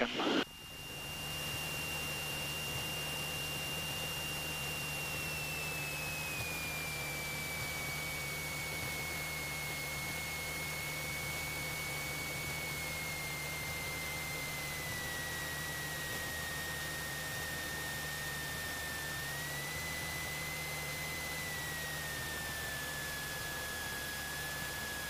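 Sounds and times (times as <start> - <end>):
aircraft engine and propeller droning: 0.0 - 25.0.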